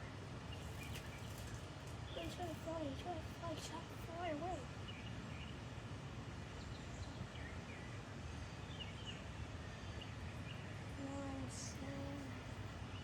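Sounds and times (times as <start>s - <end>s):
faint voice: 2.2s - 4.7s, 11.0s - 12.6s.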